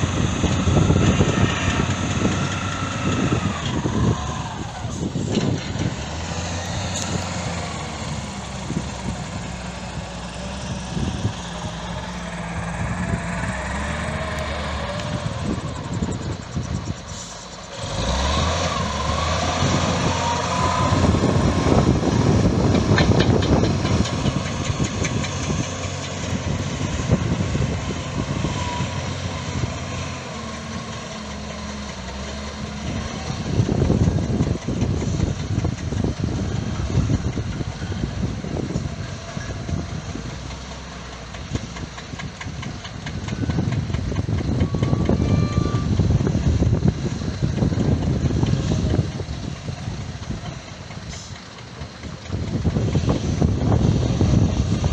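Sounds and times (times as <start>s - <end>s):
heavy machinery engines running: 0.0s - 54.9s.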